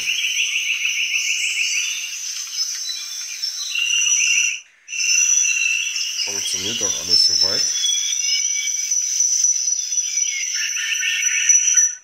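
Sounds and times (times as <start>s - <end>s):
phone speaker high chirping: 0.0s - 12.0s.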